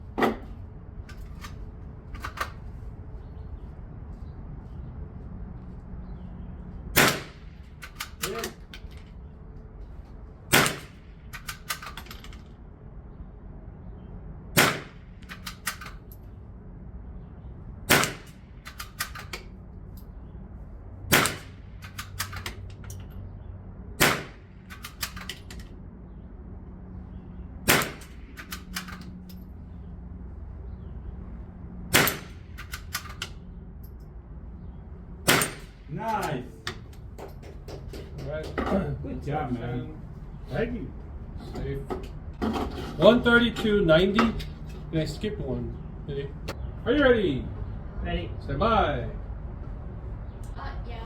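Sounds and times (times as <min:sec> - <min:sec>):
gunshot cracks: 0:17.9 - 0:18.3, 0:24.0 - 0:24.4, 0:31.9 - 0:32.4, 0:35.3 - 0:35.7.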